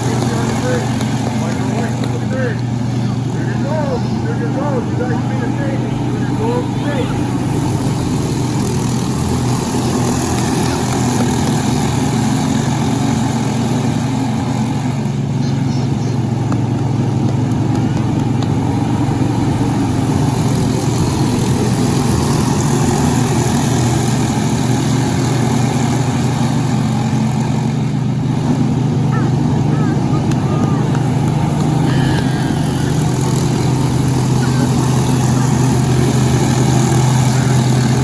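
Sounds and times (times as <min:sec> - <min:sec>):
engine droning: 0:00.0 - 0:38.0.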